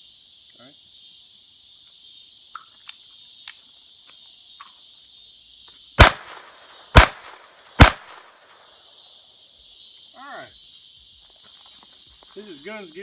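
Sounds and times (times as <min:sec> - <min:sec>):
insect chirring: 0:00.0 - 0:13.0
pistol shots: 0:06.0 - 0:08.5.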